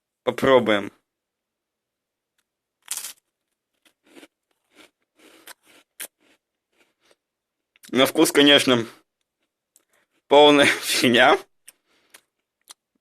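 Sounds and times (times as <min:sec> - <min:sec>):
biting into cracker: 0:02.8 - 0:07.1
chewing crunches: 0:02.8 - 0:07.2.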